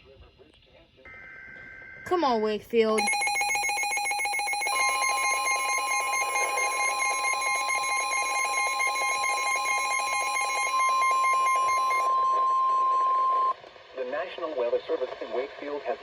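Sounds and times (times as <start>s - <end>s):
fast warbling electronic tone: 3.0s - 13.5s
steady alarm tone: 3.0s - 13.5s.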